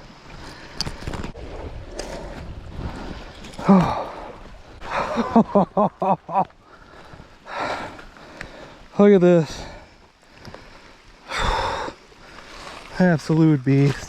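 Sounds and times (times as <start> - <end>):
man laughing: 4.8 - 6.6
man breathing hard: 6.6 - 8.9, 9.5 - 12.7.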